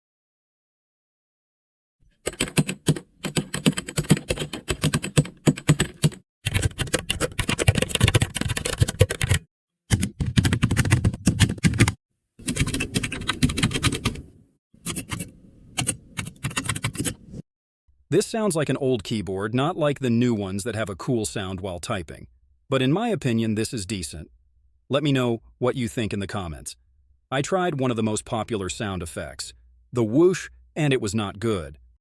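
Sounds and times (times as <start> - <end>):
keyboard key clicks: 2.3 - 17.4.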